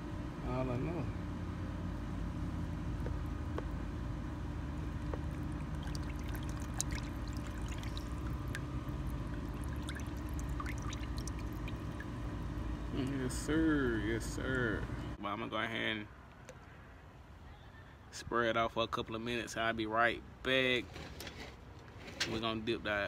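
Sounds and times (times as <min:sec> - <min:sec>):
low hum: 0:01.0 - 0:15.2
water sloshing and dripping: 0:05.0 - 0:12.7
small splashes: 0:05.1 - 0:12.7.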